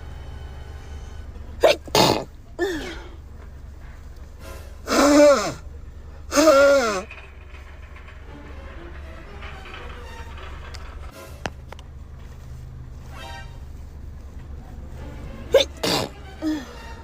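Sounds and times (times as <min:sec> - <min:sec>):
woman sneezing: 0:01.6 - 0:03.2, 0:15.5 - 0:16.7.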